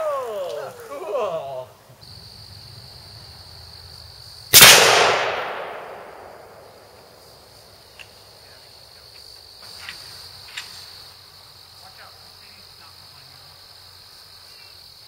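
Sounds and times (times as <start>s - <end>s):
crickets trilling: 0.0s - 15.0s
rifle shot with echo: 4.5s - 7.2s.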